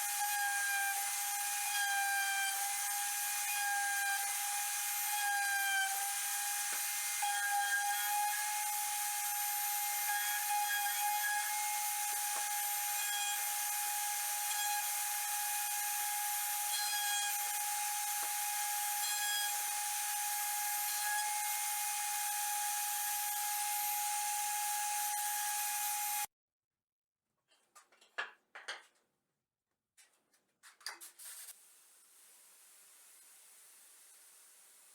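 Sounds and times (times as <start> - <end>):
router spindle whining: 22.7 - 26.3.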